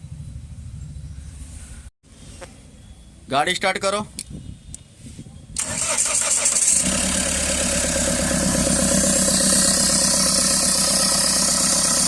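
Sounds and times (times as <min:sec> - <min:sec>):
car engine idling: 0:05.8 - 0:12.0.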